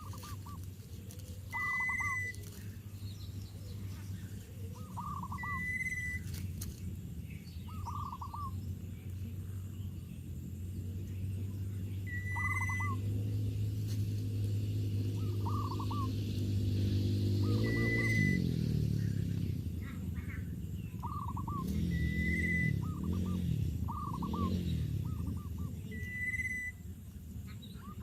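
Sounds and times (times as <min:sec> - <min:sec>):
bird calling falling notes: 0:00.0 - 0:00.7, 0:01.4 - 0:02.8, 0:04.8 - 0:06.7, 0:12.1 - 0:13.1, 0:15.2 - 0:16.2, 0:17.2 - 0:19.5, 0:21.0 - 0:26.8
low steady hum: 0:00.0 - 0:28.0
short steady bird whistle: 0:01.5 - 0:02.4, 0:17.4 - 0:18.4, 0:21.2 - 0:23.0, 0:25.9 - 0:26.8.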